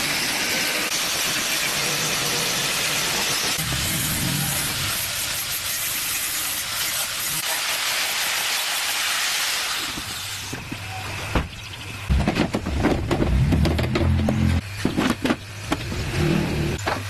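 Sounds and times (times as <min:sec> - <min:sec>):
steady loud hiss: 0:00.0 - 0:10.6.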